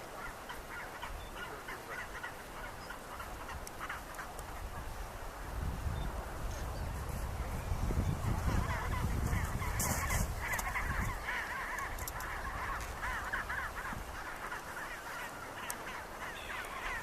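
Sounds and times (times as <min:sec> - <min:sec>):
penguins calling: 0:08.4 - 0:17.0.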